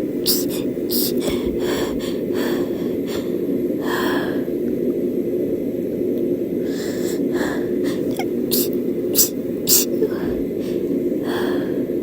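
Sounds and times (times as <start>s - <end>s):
steady low hum: 0.0s - 12.0s
person sniffing and gasping: 0.3s - 3.2s, 6.7s - 11.7s.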